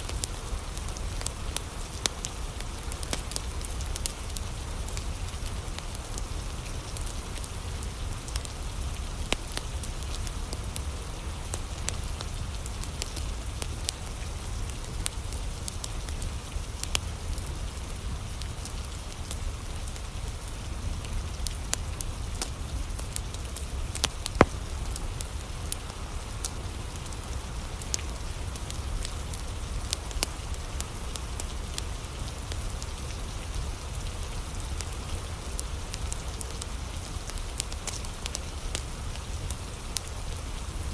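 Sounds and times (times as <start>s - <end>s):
wood fire crackling and popping: 0.1s - 6.3s, 15.8s - 17.4s, 21.4s - 33.5s, 34.1s - 40.7s
rain hissing: 13.2s - 40.9s.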